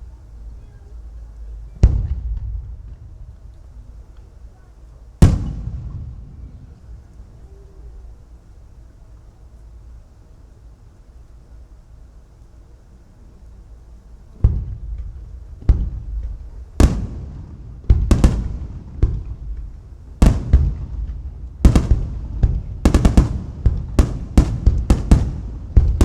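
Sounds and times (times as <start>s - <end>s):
firework shells booming: 1.4s - 8.0s, 14.4s - 26.0s.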